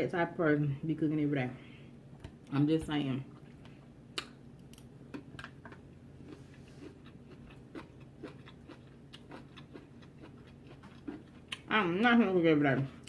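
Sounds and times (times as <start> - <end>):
person chewing food: 3.4 - 11.7.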